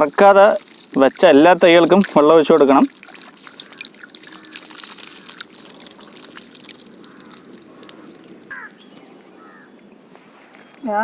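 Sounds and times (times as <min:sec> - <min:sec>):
water poured onto soil: 0:00.0 - 0:08.7
water splashes and drips: 0:00.0 - 0:11.0.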